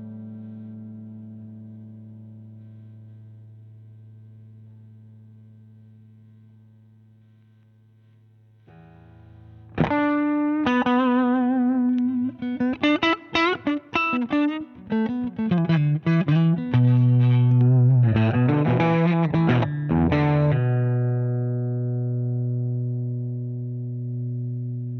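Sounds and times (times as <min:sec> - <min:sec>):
overdriven electric guitar lead: 0:09.7 - 0:24.9.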